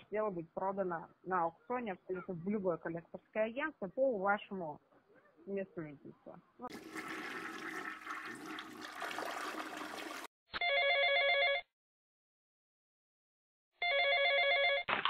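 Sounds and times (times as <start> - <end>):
electronic telephone ring: 10.6 - 11.7, 13.8 - 14.9.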